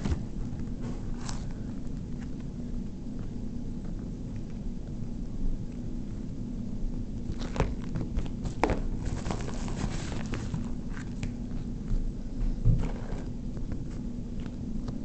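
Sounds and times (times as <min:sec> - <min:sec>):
steady low hum: 0:00.0 - 0:15.0
packaging rustles and clicks: 0:07.3 - 0:11.6.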